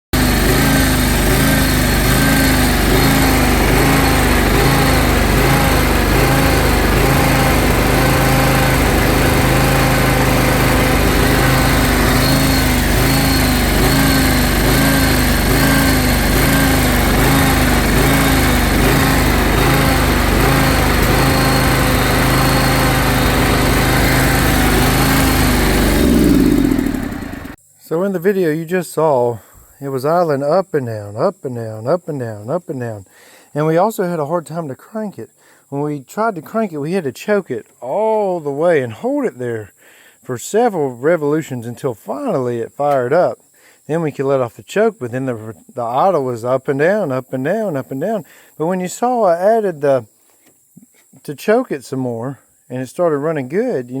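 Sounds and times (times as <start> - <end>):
lawn tractor engine idling unevenly: 0.2 - 27.6.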